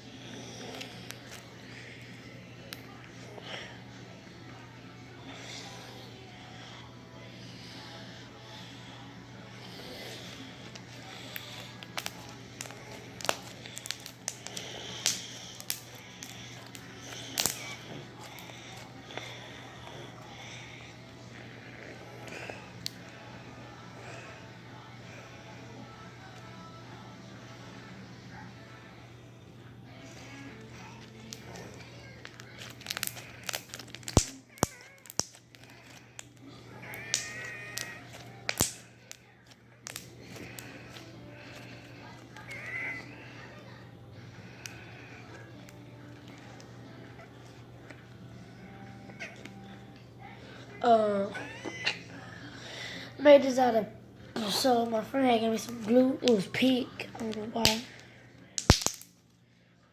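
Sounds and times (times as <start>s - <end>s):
slime squeezed with sticky pops: 58.6s - 59.1s.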